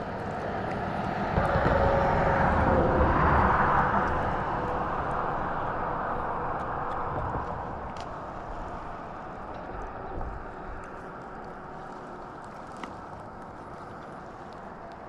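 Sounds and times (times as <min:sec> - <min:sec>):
engine passing by: 0:00.0 - 0:07.9.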